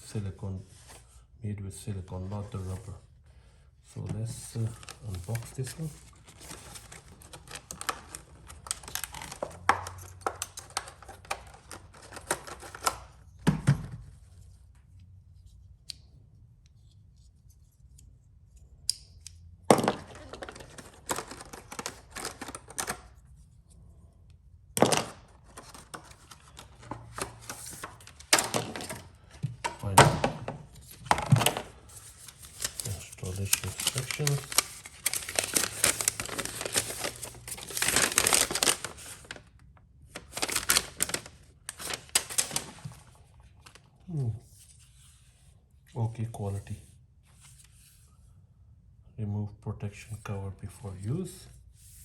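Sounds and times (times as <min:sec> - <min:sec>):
packaging rustling: 0:04.0 - 0:13.2, 0:19.8 - 0:23.2, 0:24.8 - 0:30.0, 0:30.7 - 0:43.9.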